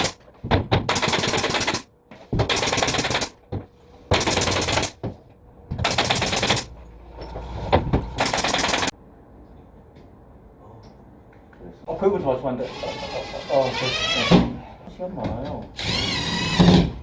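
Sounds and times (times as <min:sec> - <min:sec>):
power fastening tool hammering: 0:00.0 - 0:03.4, 0:04.1 - 0:05.1, 0:05.8 - 0:06.7, 0:08.1 - 0:08.9, 0:15.8 - 0:17.0.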